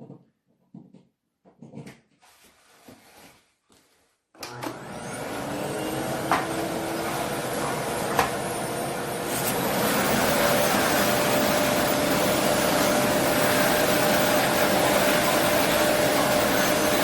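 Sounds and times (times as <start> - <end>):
vacuum cleaner motor whining: 4.4 - 17.0.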